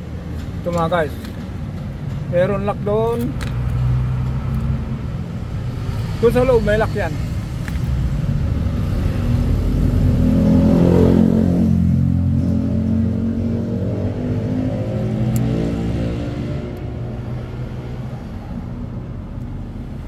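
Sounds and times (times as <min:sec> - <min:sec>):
passing vehicle engine accelerating: 0:03.8 - 0:19.1.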